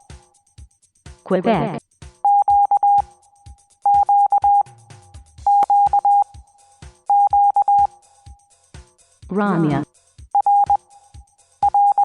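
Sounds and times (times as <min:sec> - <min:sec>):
high morse code beeping: 0:01.6 - 0:03.0, 0:03.9 - 0:04.7, 0:05.5 - 0:06.3, 0:07.1 - 0:07.9, 0:10.4 - 0:10.8, 0:11.6 - 0:12.0.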